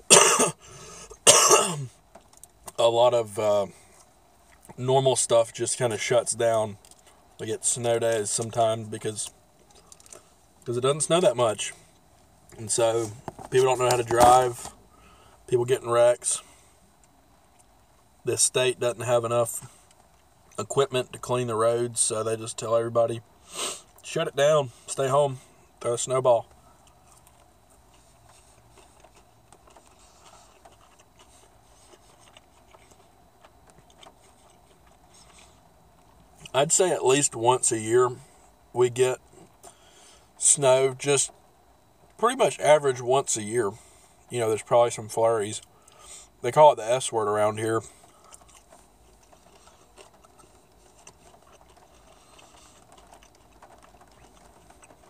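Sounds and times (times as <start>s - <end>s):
person eating clicks and rustles: 0.1s - 2.8s, 3.8s - 4.9s, 6.3s - 18.2s, 19.6s - 21.4s, 24.8s - 37.8s, 43.8s - 46.5s, 47.1s - 55.0s
person chewing food: 26.5s - 36.5s, 45.6s - 46.3s, 47.9s - 55.0s.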